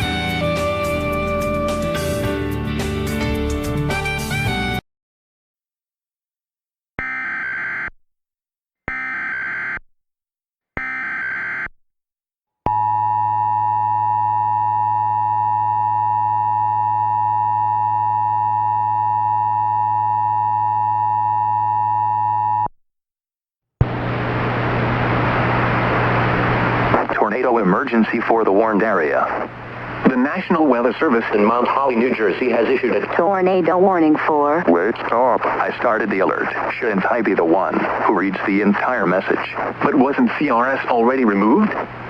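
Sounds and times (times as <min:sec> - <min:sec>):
buzzing data bursts: 0:08.9 - 0:09.8, 0:10.8 - 0:11.7
hiss with low hum: 0:23.9 - 0:33.2.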